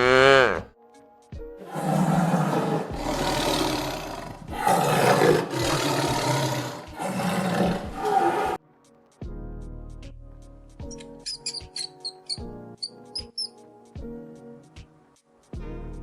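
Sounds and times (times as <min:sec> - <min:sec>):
big cat roaring: 0:01.6 - 0:08.6.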